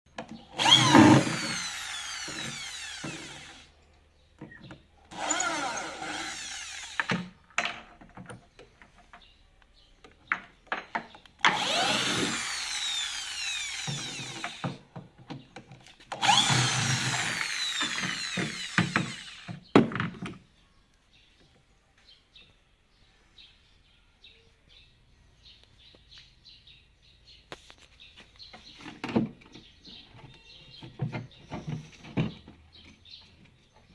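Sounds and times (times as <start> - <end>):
power drill running: 0.6 - 3.7, 5.1 - 7.2, 11.5 - 14.8, 16.1 - 19.6.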